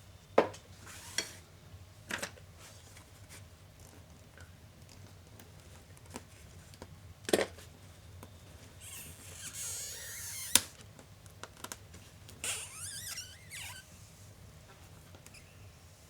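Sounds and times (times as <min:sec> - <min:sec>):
scratchy squeaking scrape: 0:08.8 - 0:10.7, 0:12.4 - 0:13.9.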